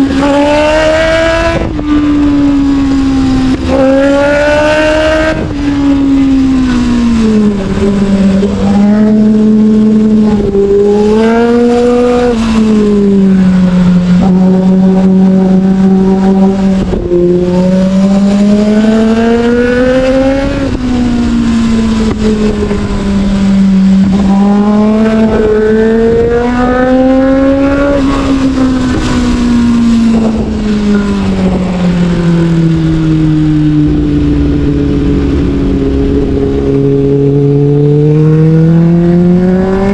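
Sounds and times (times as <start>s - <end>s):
motorcycle engine revving: 0.0s - 39.9s
wind noise: 0.0s - 39.9s.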